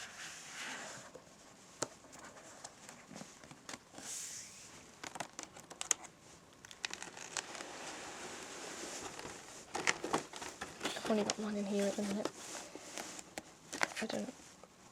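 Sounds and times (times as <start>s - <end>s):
document folder crinkling: 5.0s - 14.2s.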